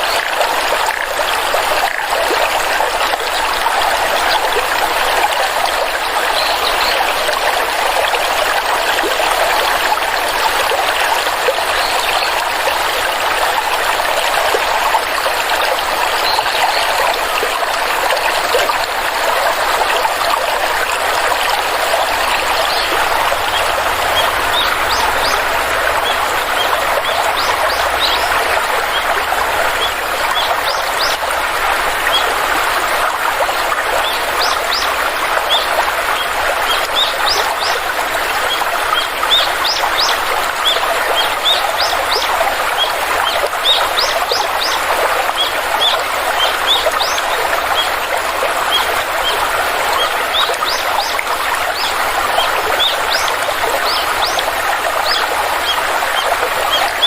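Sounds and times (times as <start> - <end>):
water stream flowing: 0.0 - 57.0
small birds chirping: 22.0 - 31.2.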